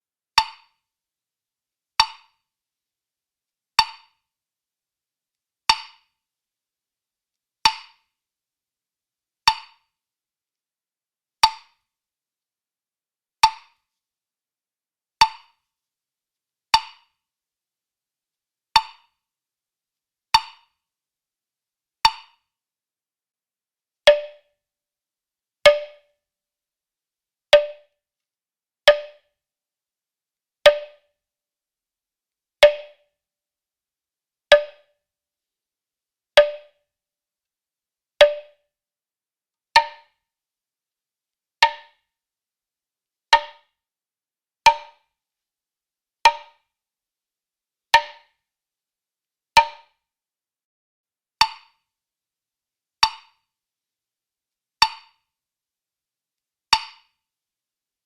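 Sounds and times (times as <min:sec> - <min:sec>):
woodblock knocks: 0:20.4 - 0:20.6, 0:24.1 - 0:24.5, 0:25.7 - 0:26.1, 0:27.6 - 0:28.0, 0:28.9 - 0:29.3, 0:30.7 - 0:31.1, 0:32.6 - 0:33.0, 0:34.5 - 0:34.9, 0:36.4 - 0:36.8, 0:38.2 - 0:38.6, 0:39.8 - 0:40.1, 0:41.6 - 0:41.9, 0:43.4 - 0:43.6, 0:44.7 - 0:45.0, 0:46.3 - 0:46.6, 0:48.0 - 0:48.3, 0:49.6 - 0:50.0, 0:51.4 - 0:51.7, 0:53.0 - 0:53.3, 0:54.8 - 0:55.1, 0:56.7 - 0:57.0.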